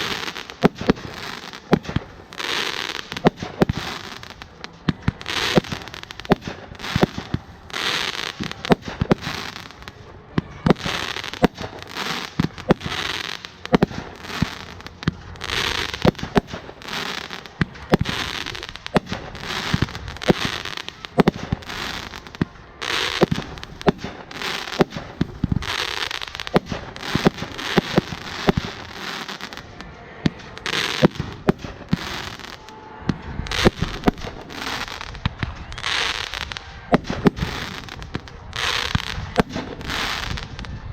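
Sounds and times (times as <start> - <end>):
firework fountains hissing: 0.0 - 40.9
firework pops and bangs: 0.0 - 40.9.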